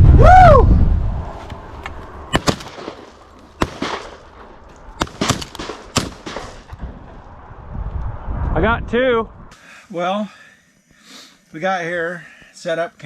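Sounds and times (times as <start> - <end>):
sharp short cracks: 1.9 - 6.8
faint steady hiss: 8.9 - 13.0.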